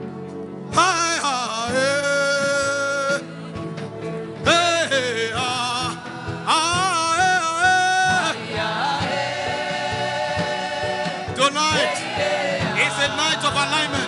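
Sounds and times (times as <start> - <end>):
background music with soft beat: 0.0 - 14.0
person singing wordless chant: 11.4 - 14.0.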